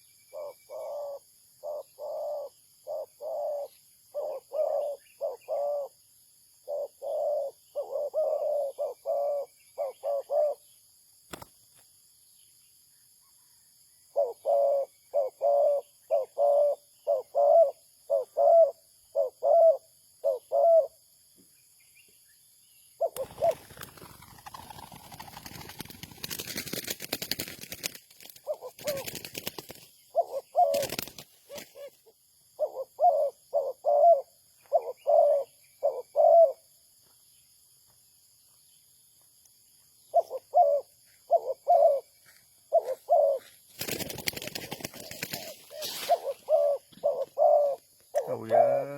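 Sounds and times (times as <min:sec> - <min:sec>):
dove cooing: 0:00.3 - 0:06.0, 0:06.6 - 0:10.7, 0:14.1 - 0:21.0, 0:23.0 - 0:26.0, 0:28.4 - 0:36.7, 0:40.1 - 0:42.1, 0:42.7 - 0:48.9.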